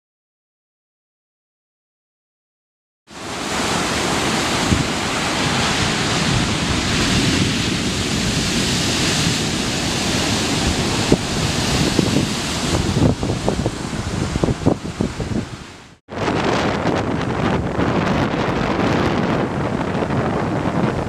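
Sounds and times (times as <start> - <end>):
ocean surf rushing: 3.1 - 21.0
wind rumble on microphone: 3.2 - 21.0.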